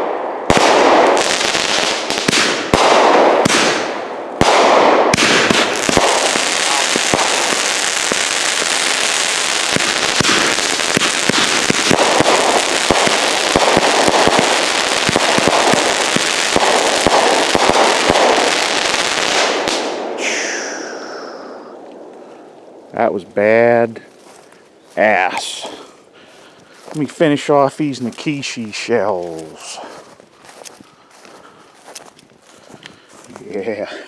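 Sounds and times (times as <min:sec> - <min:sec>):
firework shots launching: 0:00.0 - 0:20.2
firework crackling: 0:00.0 - 0:21.8.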